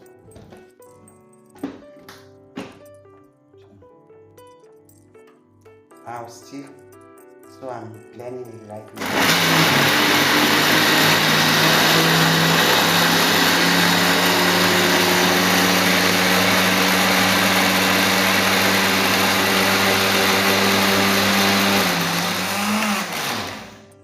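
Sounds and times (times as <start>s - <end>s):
kitchen blender running: 9.0s - 24.0s.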